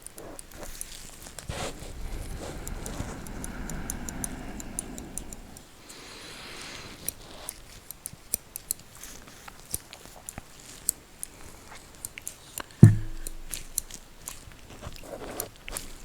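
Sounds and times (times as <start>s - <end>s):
knock with low ring: 12.8s - 13.8s.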